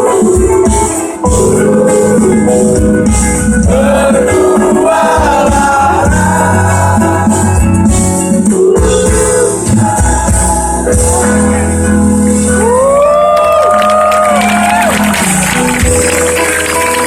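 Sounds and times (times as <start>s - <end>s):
person singing: 0.0s - 11.8s
acoustic guitar: 0.0s - 17.0s.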